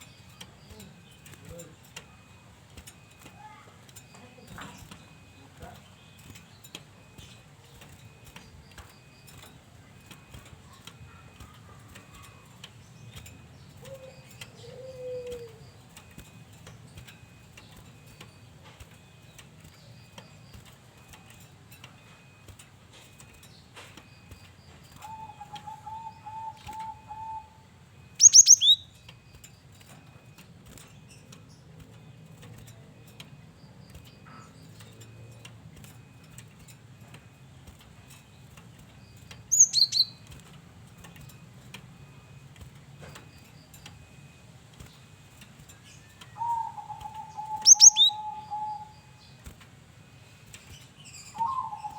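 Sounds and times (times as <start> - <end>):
low bird notes: 46.2 - 49.4, 51.2 - 51.9.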